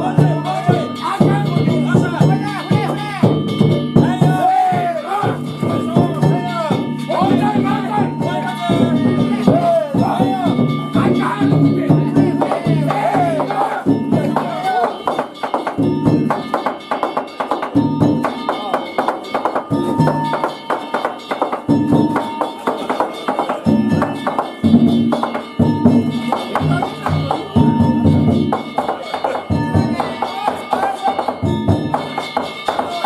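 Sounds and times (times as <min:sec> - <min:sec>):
people shouting: 0:00.0 - 0:03.4, 0:04.0 - 0:15.2, 0:29.0 - 0:32.1, 0:32.7 - 0:33.0
drum beats: 0:00.0 - 0:33.0
hand gongs ringing: 0:00.0 - 0:33.0.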